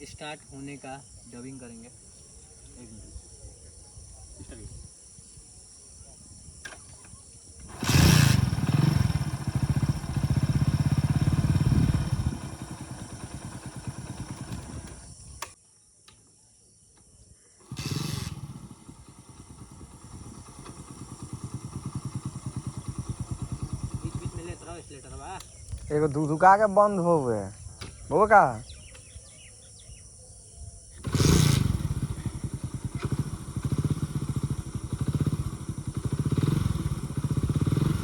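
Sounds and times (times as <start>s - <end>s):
motorcycle engine idling: 6.8s - 15.4s, 17.6s - 25.7s, 31.0s - 38.0s.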